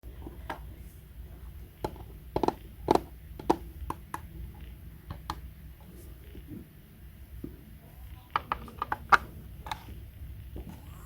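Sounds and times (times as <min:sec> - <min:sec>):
hard objects clicking and tapping: 0:01.8 - 0:04.3, 0:08.3 - 0:09.9.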